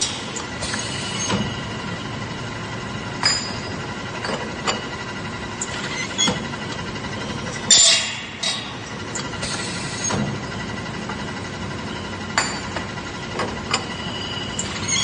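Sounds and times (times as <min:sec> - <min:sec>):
factory machinery humming: 0:00.0 - 0:15.0
metallic clanks: 0:07.6 - 0:10.4.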